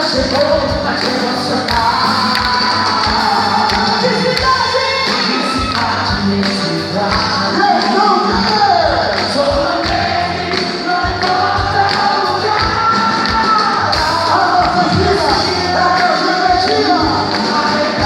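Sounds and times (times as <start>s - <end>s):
folk dance music with singing: 0.0s - 18.0s.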